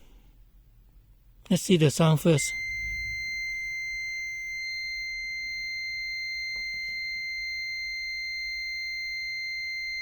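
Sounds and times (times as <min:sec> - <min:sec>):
multimeter continuity beep: 0:02.4 - 0:10.0.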